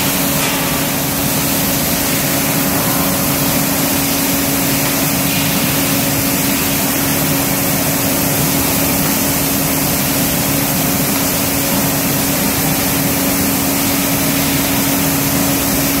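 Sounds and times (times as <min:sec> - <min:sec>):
paint sprayer hissing: 0:00.0 - 0:16.0.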